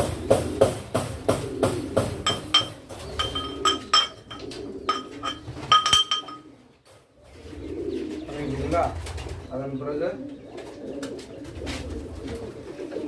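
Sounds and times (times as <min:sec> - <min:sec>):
pigeons cooing softly: 0:00.0 - 0:13.0
tablets being pounded: 0:00.6 - 0:06.4.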